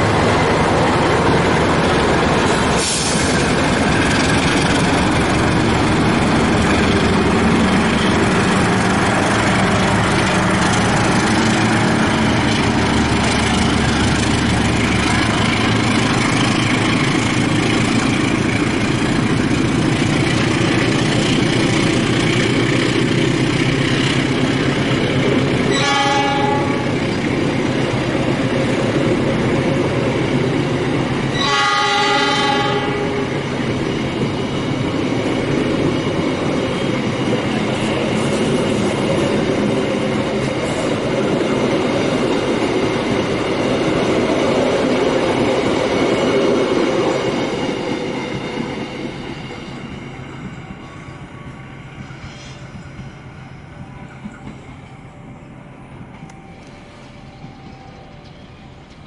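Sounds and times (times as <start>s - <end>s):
diesel train engine and wheels: 0.0s - 59.0s
locomotive horn blasts: 25.7s - 27.0s, 31.3s - 33.4s.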